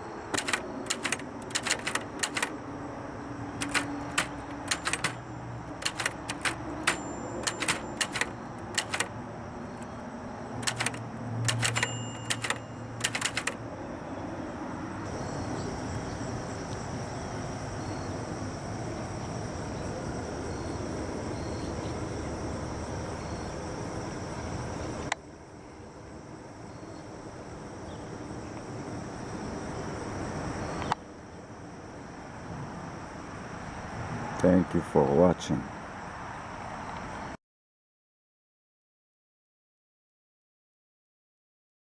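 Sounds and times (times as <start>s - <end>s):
typewriter typing: 0.3s - 2.6s, 3.6s - 9.2s, 10.6s - 13.6s.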